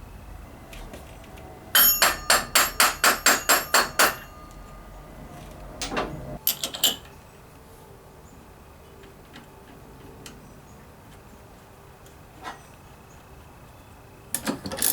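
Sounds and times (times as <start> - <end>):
hammer striking metal: 1.8 - 6.4.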